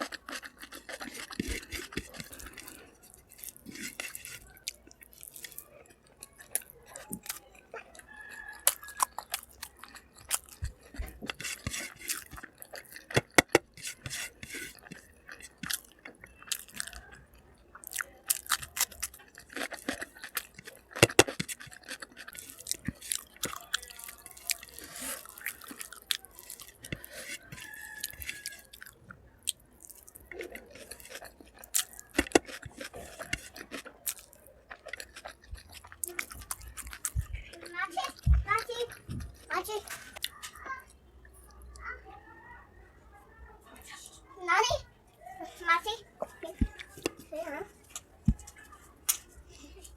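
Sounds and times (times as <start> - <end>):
person chewing: 0.0 - 41.7
food crunch: 0.0 - 41.8, 46.2 - 49.9.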